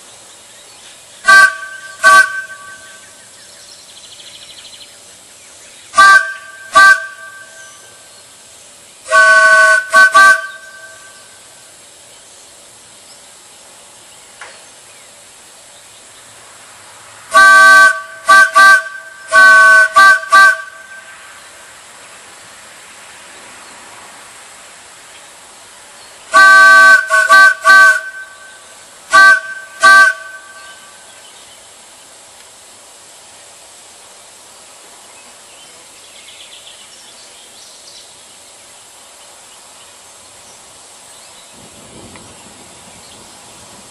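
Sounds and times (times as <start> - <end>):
wooden train whistle toots: 1.2 - 3.2, 6.0 - 7.9, 9.1 - 11.3, 17.3 - 21.4, 26.3 - 31.1.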